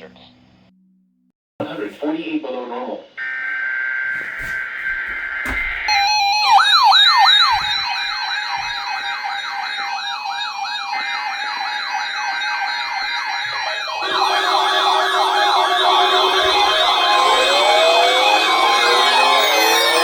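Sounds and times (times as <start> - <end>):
electronic sirens yelping: 4.7 - 20.0
steady alert tone: 13.2 - 20.0.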